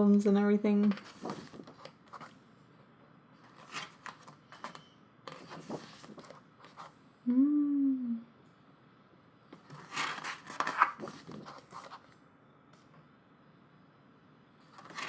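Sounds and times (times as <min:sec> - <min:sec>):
paper pages turning: 0:00.8 - 0:02.4, 0:03.4 - 0:06.9, 0:09.6 - 0:12.1, 0:14.6 - 0:15.0
person humming: 0:07.2 - 0:08.4.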